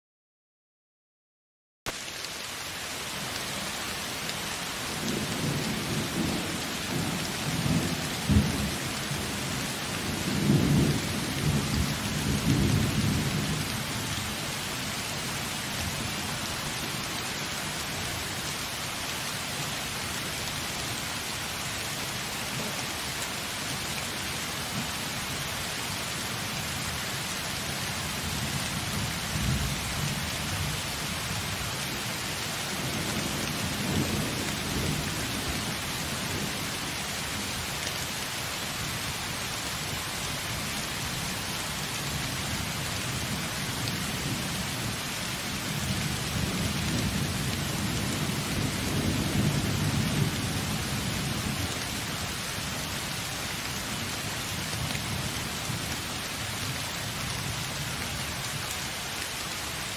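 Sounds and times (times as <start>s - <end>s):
steady rain falling: 1.9s - 59.9s
low rolling thunder: 10.0s - 13.7s.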